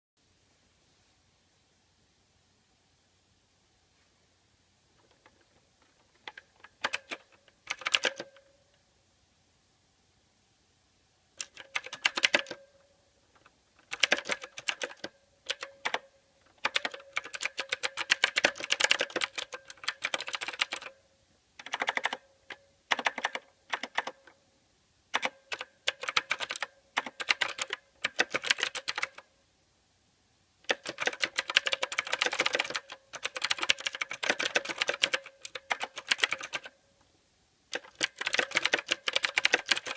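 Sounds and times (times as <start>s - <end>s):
mechanical keyboard typing: 5.0s - 8.5s, 11.4s - 12.7s, 13.4s - 21.0s, 21.6s - 24.4s, 25.1s - 29.3s, 30.6s - 36.8s, 37.7s - 39.9s.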